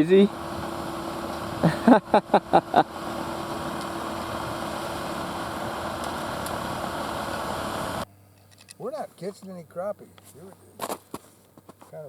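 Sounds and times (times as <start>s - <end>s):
vehicle engine droning: 0.0s - 8.1s.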